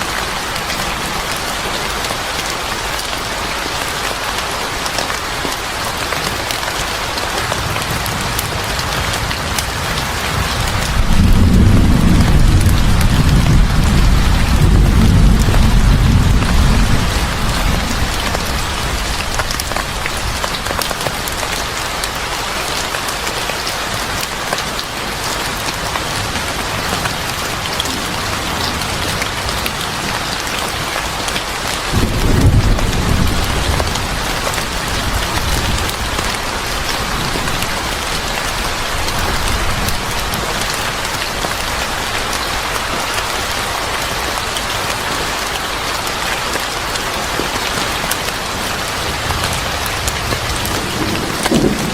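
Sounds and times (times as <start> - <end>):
heavy rain: 0.0 - 51.9
thunder rumble: 7.5 - 20.8, 26.2 - 31.2, 31.8 - 40.5, 49.0 - 51.9.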